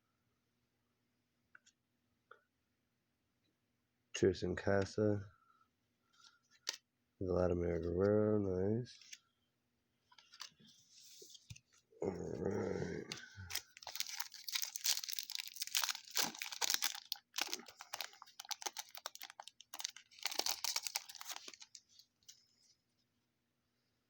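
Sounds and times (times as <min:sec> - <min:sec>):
wrapper crinkling: 0:13.2 - 0:22.1.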